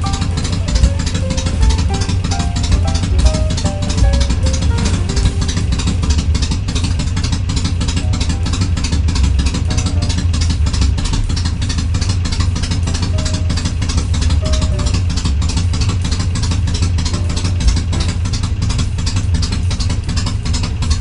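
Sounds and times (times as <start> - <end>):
motorcycle engine idling: 0.0 - 21.0.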